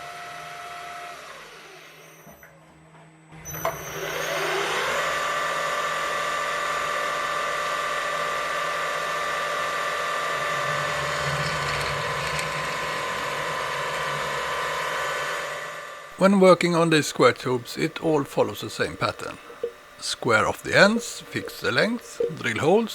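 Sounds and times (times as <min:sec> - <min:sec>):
motor whining: 0:07.1 - 0:22.8.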